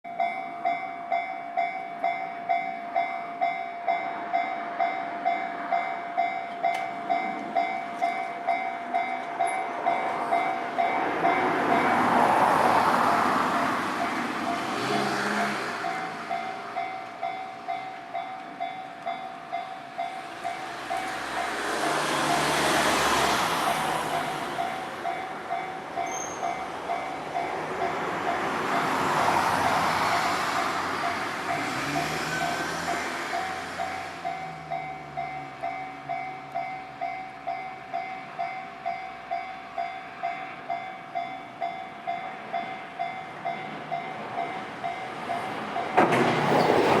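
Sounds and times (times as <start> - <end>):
train passing: 0.1 - 47.0
passing vehicle noise: 3.9 - 47.0.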